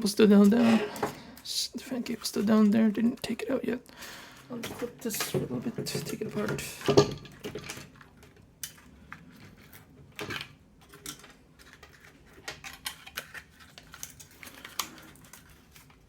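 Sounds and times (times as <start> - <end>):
plastic parts clicking: 4.6 - 16.0.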